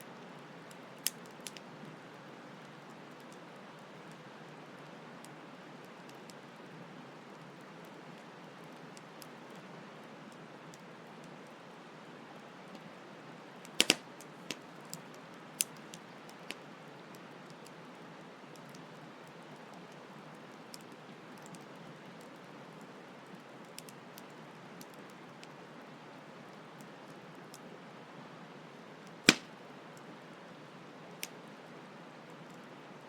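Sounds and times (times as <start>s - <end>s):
campfire crackling: 0.4s - 27.8s, 28.7s - 31.6s
fire popping: 13.6s - 16.6s, 29.2s - 29.6s.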